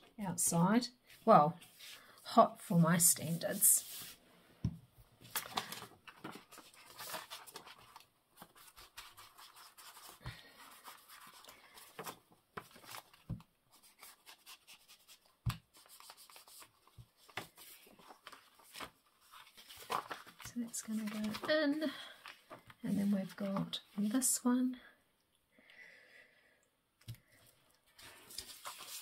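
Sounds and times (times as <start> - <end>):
paper rustling and tapping: 5.2 - 14.4, 15.4 - 22.8.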